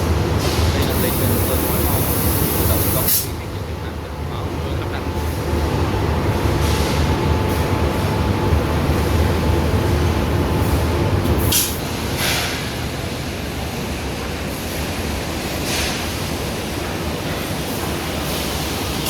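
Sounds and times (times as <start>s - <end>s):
short hissing bursts: 0.9s - 3.3s.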